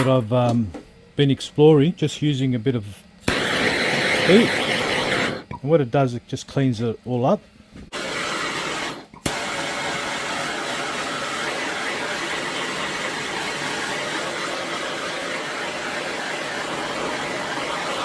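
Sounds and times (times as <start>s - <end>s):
heat gun blowing hot air: 3.2s - 5.4s, 7.9s - 18.0s.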